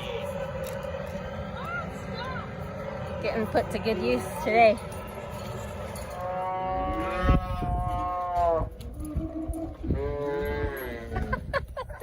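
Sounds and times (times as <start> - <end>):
cattle mooing: 6.0 - 11.3.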